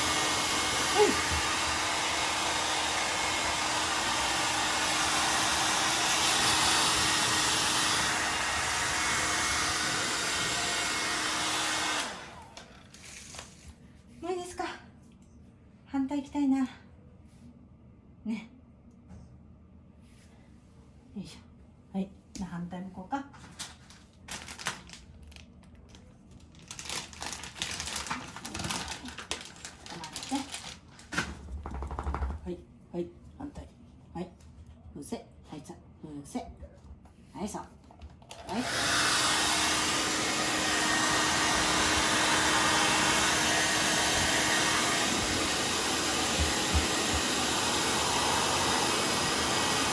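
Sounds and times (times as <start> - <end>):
hair dryer blowing: 0.0 - 13.2, 38.3 - 49.9
rustling and crinkling handling: 12.7 - 14.2, 23.3 - 31.5.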